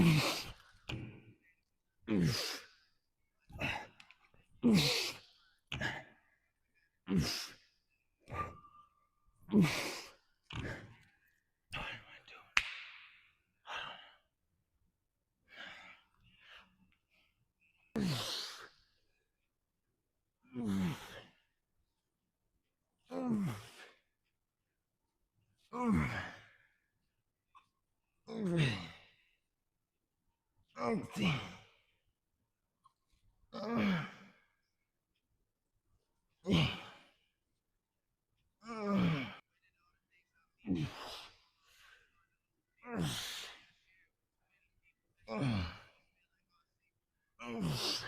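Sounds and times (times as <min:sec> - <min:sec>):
man breathing heavily: 0:02.1 - 0:02.8, 0:03.5 - 0:06.3, 0:13.6 - 0:14.4, 0:15.4 - 0:18.8, 0:20.6 - 0:21.4, 0:40.7 - 0:42.2, 0:42.9 - 0:43.7.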